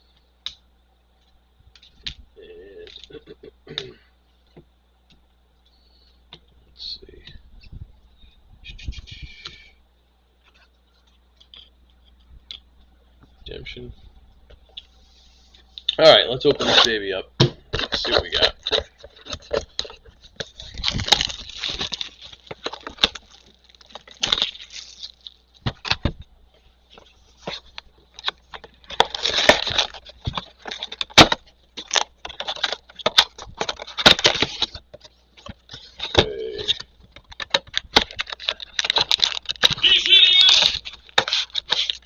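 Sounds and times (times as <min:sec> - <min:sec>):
cardboard rustling: 0:17.7 - 0:26.2, 0:26.9 - 0:42.0
wrap crinkling: 0:17.9 - 0:25.9, 0:26.5 - 0:42.0.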